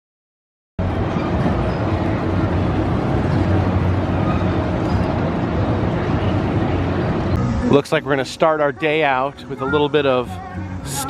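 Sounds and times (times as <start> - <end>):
fairground background noise: 0.8 - 11.0.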